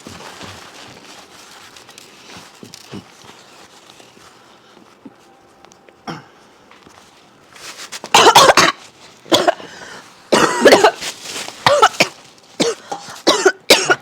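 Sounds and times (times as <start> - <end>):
person coughing hard: 8.1 - 9.7, 10.3 - 11.0, 11.6 - 14.0.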